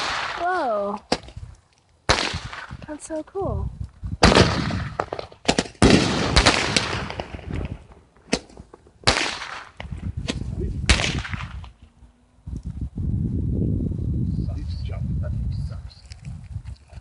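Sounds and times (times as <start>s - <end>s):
fireworks bangs and pops: 0.0s - 1.4s, 2.1s - 3.0s, 4.2s - 11.7s.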